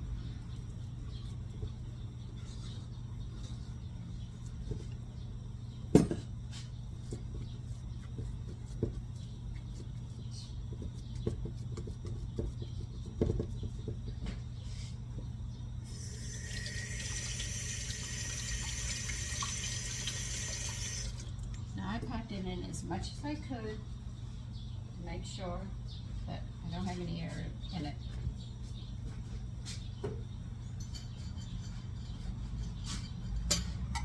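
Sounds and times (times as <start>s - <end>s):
constant low hum: 0.0s - 34.0s
knocks and clunks from handling mold: 5.9s - 7.5s
kitchen tap running: 15.9s - 21.5s.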